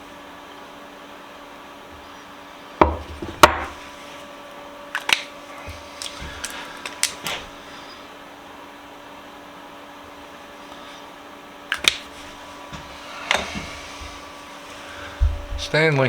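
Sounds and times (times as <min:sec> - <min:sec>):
steady hum: 0:00.0 - 0:16.0
hard objects knocking on workbench: 0:02.8 - 0:03.8.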